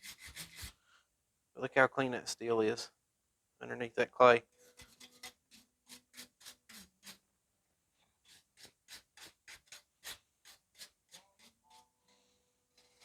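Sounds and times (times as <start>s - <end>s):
brush scraping steel blade: 0.0s - 0.8s, 4.6s - 7.2s, 8.2s - 11.9s, 12.7s - 13.0s.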